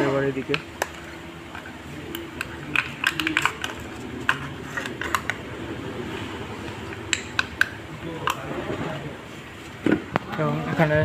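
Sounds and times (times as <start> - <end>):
steady low hum: 0.0 - 11.0
small metal parts clicking: 2.1 - 5.4.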